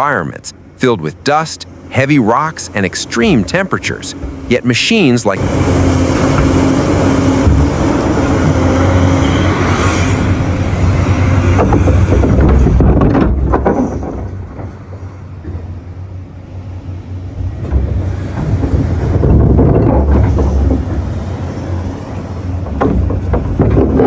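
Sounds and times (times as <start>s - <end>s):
diesel machinery engine drone: 0.0s - 24.0s
sharp knocks: 11.1s - 15.7s, 17.6s - 24.0s.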